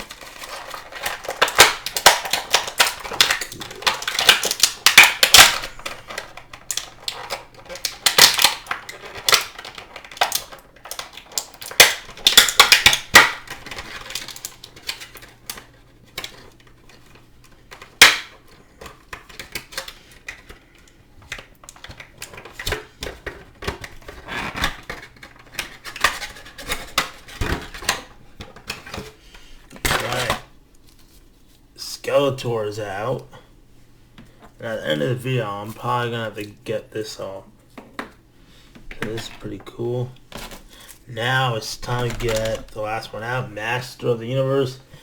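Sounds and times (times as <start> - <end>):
plastic packaging clicking and crinkling: 0.0 - 31.6, 36.4 - 45.0.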